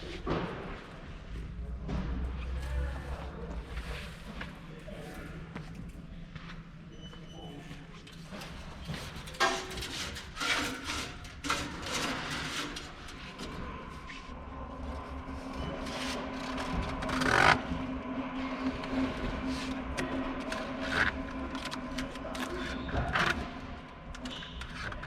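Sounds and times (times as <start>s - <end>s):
machine hum: 8.1s - 25.0s
metal wire scraping and knocking: 8.3s - 14.0s.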